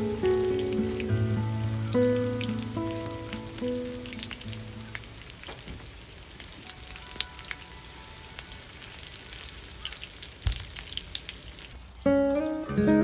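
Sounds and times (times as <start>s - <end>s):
small pops of frying: 0.0s - 12.6s
food sizzling in a pan: 0.0s - 12.7s.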